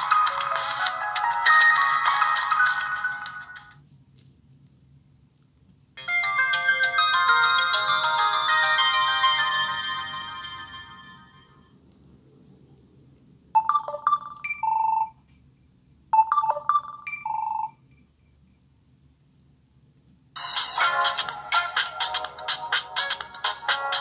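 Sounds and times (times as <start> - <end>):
electronic phone ringtone: 0.0 - 3.8, 6.0 - 11.6, 20.4 - 24.0.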